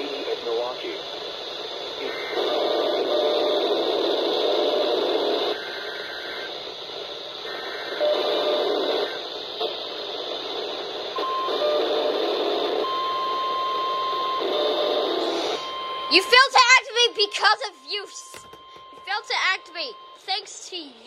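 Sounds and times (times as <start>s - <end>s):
harsh noisy radio bursts: 0.0s - 13.3s, 14.1s - 21.0s
steady alarm tone: 0.0s - 21.0s.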